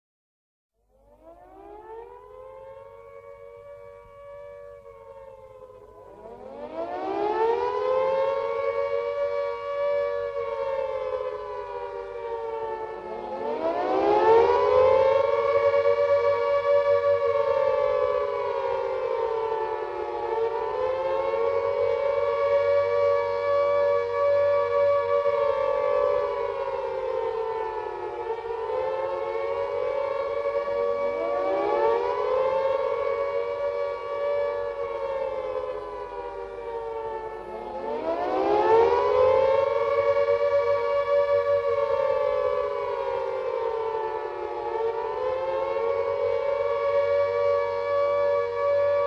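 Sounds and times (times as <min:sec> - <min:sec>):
air-raid sirens wailing: 0:00.9 - 0:49.0.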